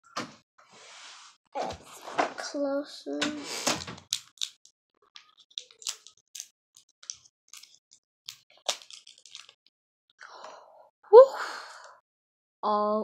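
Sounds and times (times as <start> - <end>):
plastic pieces clicking and tapping: 3.8 - 9.6.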